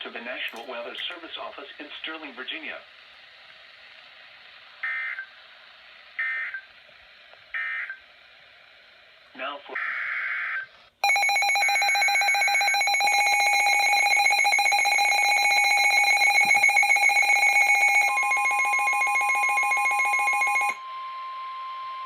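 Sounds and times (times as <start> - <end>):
faint radio hiss: 0.0 - 9.8
shrill pulsing alarm tone: 11.0 - 20.8
steady warning tone: 11.0 - 20.9.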